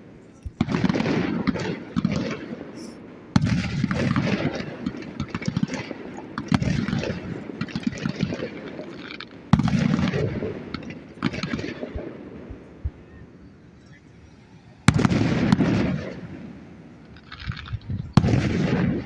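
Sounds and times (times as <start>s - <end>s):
fireworks bursting: 0.0s - 13.5s, 14.8s - 19.0s
rapid crackling pops: 0.3s - 13.0s, 17.0s - 19.0s.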